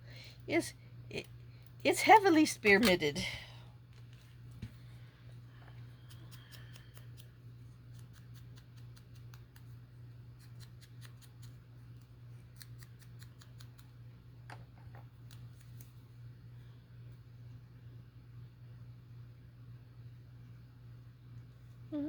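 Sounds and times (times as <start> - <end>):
steady low hum: 0.0 - 22.0
scissors snipping paper: 10.4 - 14.0.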